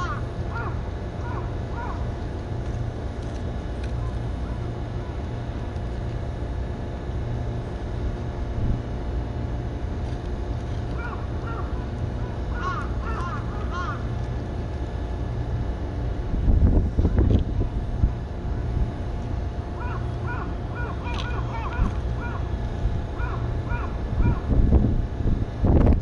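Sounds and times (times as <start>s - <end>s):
harsh bird calls: 0.0s - 2.1s, 11.0s - 14.1s, 19.8s - 22.5s, 23.2s - 24.5s
steady low rumble: 0.0s - 26.0s.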